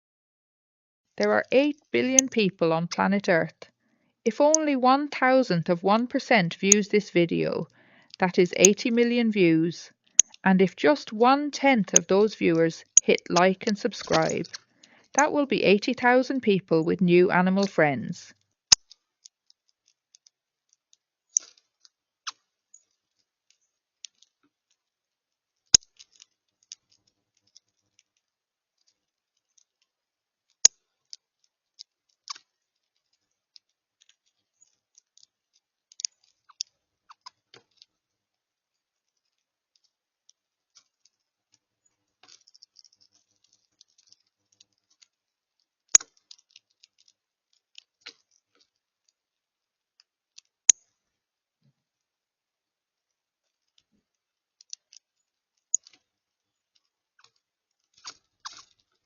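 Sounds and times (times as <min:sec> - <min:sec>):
birds clicking and ticking: 0:06.6 - 0:17.7.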